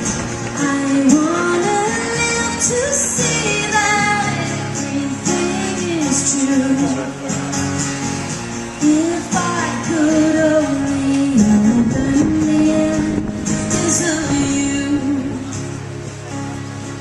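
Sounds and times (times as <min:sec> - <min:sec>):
pop-rock band playing: 0:00.0 - 0:17.0
woman singing: 0:00.6 - 0:07.1, 0:08.8 - 0:15.6.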